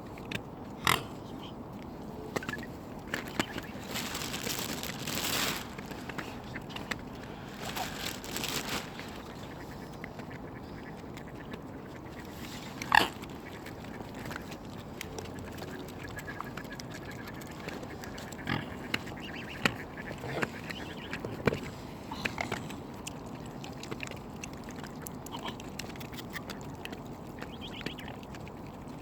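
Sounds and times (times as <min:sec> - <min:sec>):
waterfowl calling: 0:07.5 - 0:14.0, 0:15.7 - 0:21.3, 0:27.4 - 0:28.3.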